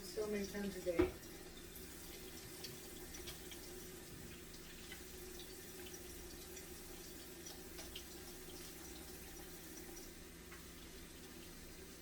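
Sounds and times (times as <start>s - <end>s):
tap running into sink: 0.9s - 1.4s.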